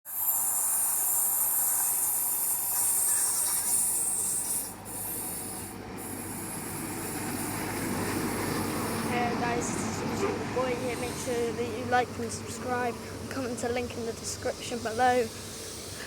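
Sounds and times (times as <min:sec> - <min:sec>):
high-pitched hiss: 0:00.1 - 0:09.2, 0:10.7 - 0:12.0, 0:12.6 - 0:16.0
train low rumble: 0:03.8 - 0:16.0.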